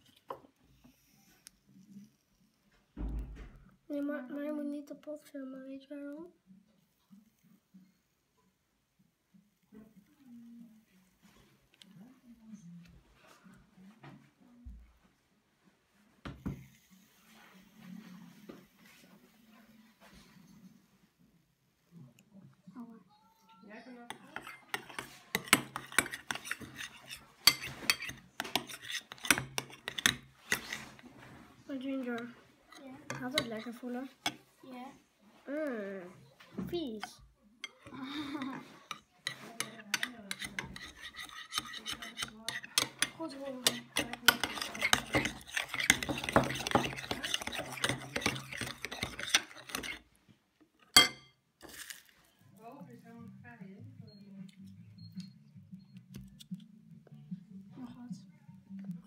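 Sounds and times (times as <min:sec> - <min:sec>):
utensil clinking against bowl: 0:24.1 - 0:30.8, 0:37.0 - 0:50.0.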